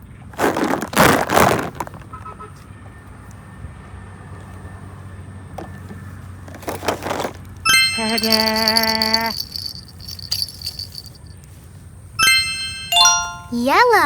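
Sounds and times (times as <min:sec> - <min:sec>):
crackly handling noise: 0:00.4 - 0:02.2, 0:05.6 - 0:11.4.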